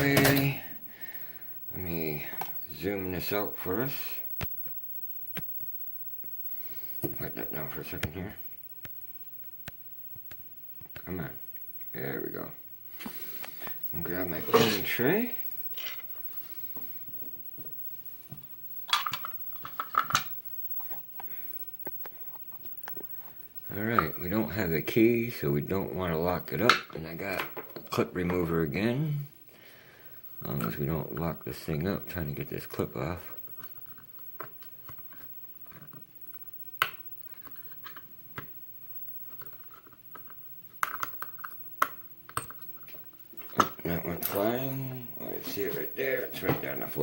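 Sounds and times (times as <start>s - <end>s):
small metal tools clattering: 0.0s - 0.7s.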